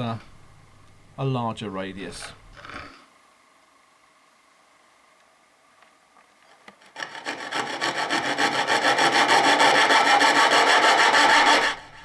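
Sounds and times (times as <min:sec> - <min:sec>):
coping saw cutting wood: 0:06.4 - 0:12.0.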